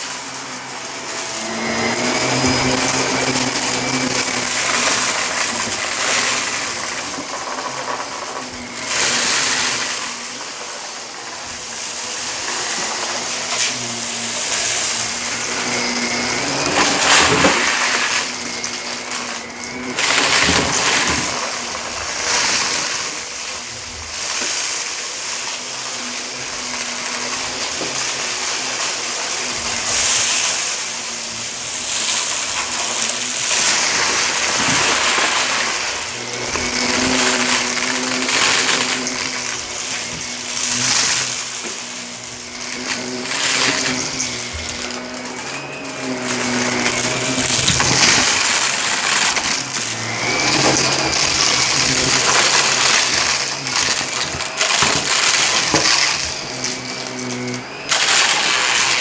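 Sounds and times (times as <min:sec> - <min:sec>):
vacuum airflow hiss: 0:00.0 - 0:59.0
vacuum cleaner motor hum: 0:00.0 - 0:59.0.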